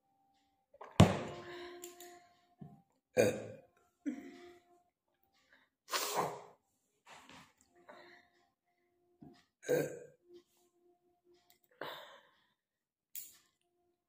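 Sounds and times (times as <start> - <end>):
woman burping: 3.2 - 4.4, 9.6 - 10.2.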